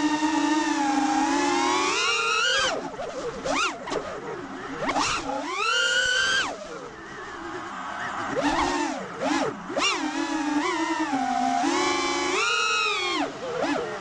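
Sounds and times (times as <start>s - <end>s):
quadcopter motors whining: 0.0s - 14.0s.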